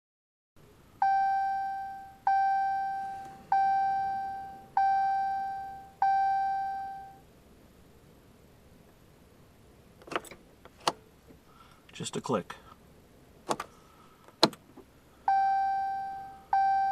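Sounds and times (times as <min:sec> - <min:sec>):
dashboard warning chimes: 0:01.0 - 0:07.2, 0:15.3 - 0:16.9.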